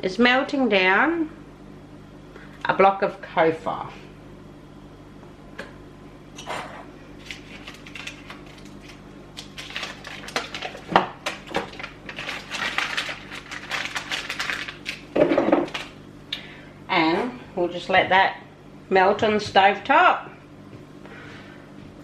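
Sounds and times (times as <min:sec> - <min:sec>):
wrapper rustling: 0:07.2 - 0:16.0.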